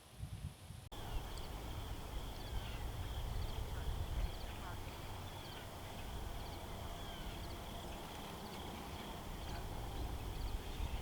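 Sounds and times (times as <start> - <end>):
steady low rumble: 0.9 - 11.0
faint bird chirps: 1.0 - 9.6.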